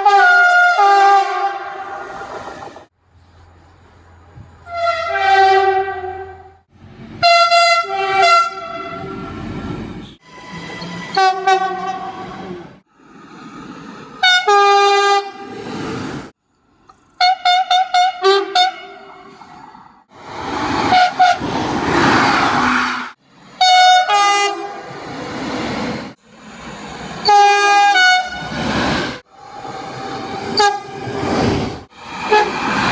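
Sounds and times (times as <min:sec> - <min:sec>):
train horn blasts: 0:00.0 - 0:02.2, 0:04.6 - 0:12.6, 0:14.2 - 0:15.5, 0:17.2 - 0:19.2, 0:20.9 - 0:21.5, 0:23.6 - 0:24.9, 0:27.2 - 0:28.6, 0:29.2 - 0:31.3, 0:32.2 - 0:32.9
passing train rushing: 0:00.0 - 0:32.9.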